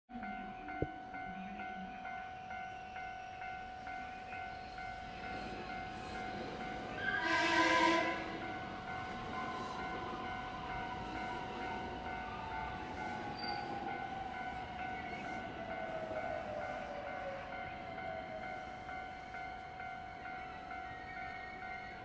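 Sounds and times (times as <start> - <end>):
train passing: 0.1 - 22.0.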